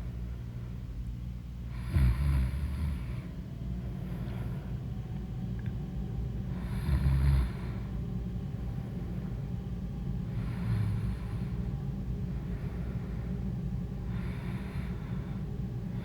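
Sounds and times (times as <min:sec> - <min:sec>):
steady low background noise: 0:00.0 - 0:16.0
woman snoring: 0:01.7 - 0:03.2, 0:06.6 - 0:07.8, 0:10.5 - 0:11.4.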